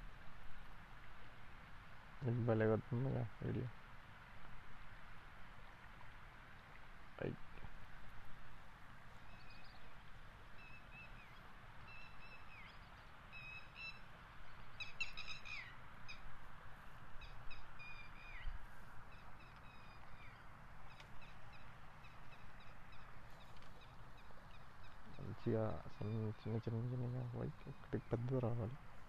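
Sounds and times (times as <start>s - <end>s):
steady outdoor hiss: 0.0s - 29.0s
birds whistling calls: 14.7s - 16.2s.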